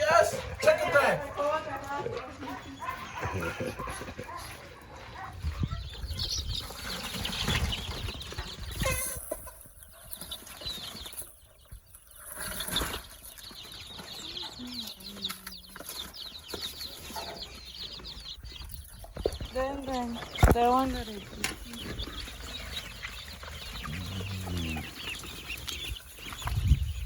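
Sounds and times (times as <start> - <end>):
poultry clucking: 0.0 - 27.0.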